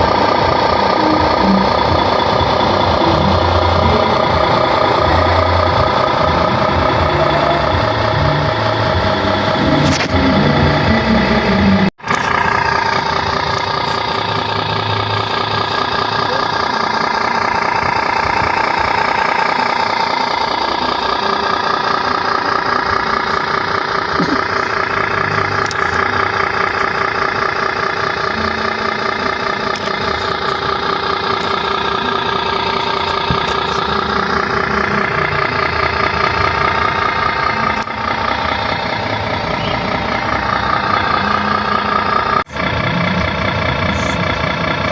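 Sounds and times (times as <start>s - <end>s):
small engine idling: 0.0s - 44.9s.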